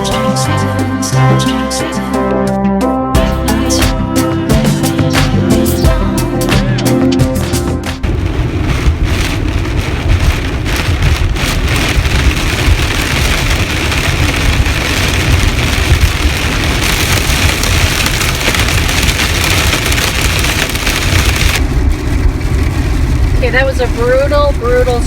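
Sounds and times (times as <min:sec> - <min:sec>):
heavy rain pounding on car: 0:07.9 - 0:25.0.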